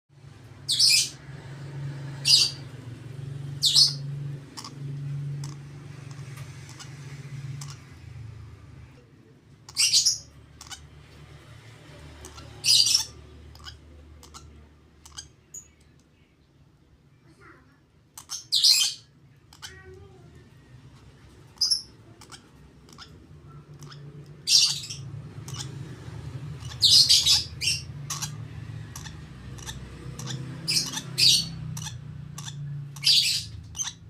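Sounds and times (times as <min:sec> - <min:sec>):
bird chick squawking: 0:21.6 - 0:34.0.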